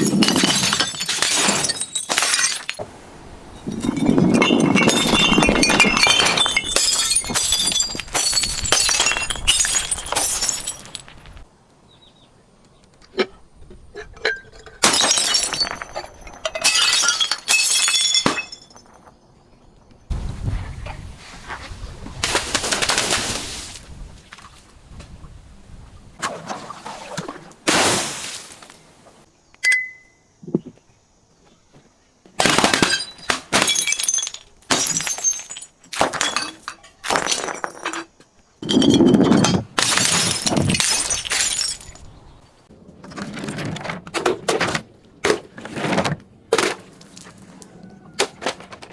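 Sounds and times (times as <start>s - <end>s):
glass bottles shattering: 0.0s - 2.8s, 3.6s - 11.4s, 14.2s - 19.0s, 32.4s - 38.0s, 38.6s - 42.3s
glass shards tinkling: 0.0s - 2.8s, 3.6s - 11.4s, 33.8s - 37.6s, 38.6s - 42.2s.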